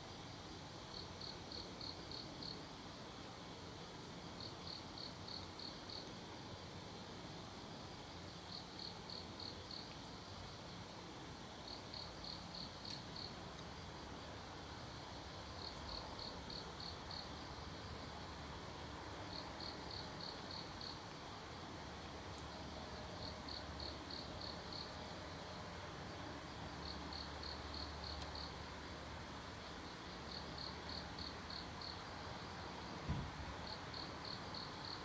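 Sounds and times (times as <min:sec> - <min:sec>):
faint background hiss: 0:00.0 - 0:35.0
cricket chirping: 0:00.9 - 0:02.7, 0:04.4 - 0:06.1, 0:08.2 - 0:10.0, 0:11.6 - 0:13.4, 0:15.2 - 0:21.1, 0:22.6 - 0:25.1, 0:26.1 - 0:28.8, 0:29.5 - 0:35.0.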